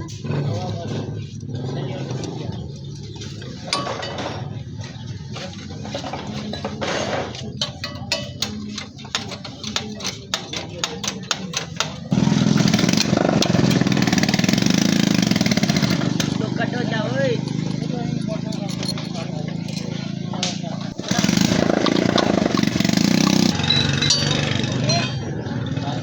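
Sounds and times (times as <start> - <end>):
motorcycle engine running: 11.8 - 26.0.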